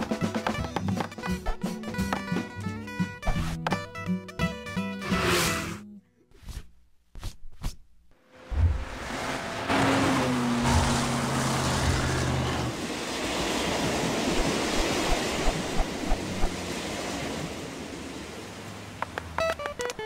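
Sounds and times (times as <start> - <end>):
wind and sea surf: 8.5 - 20.0.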